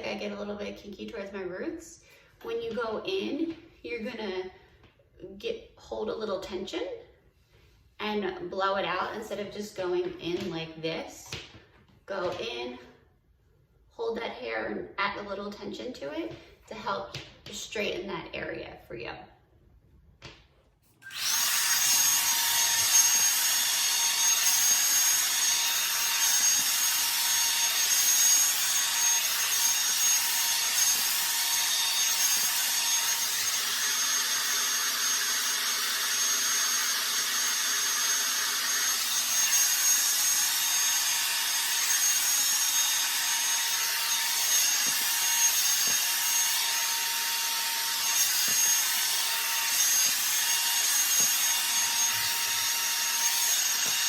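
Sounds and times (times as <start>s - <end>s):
hair dryer blowing with high whine: 21.0s - 54.0s.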